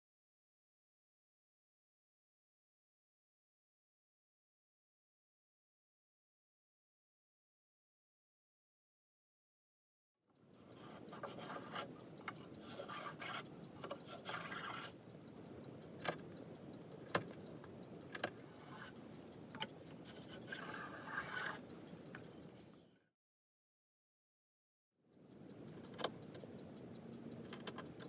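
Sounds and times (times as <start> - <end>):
hand tool rasping on wood: 12.5 - 14.9, 20.1 - 21.6
sharp clicks: 25.7 - 28.0.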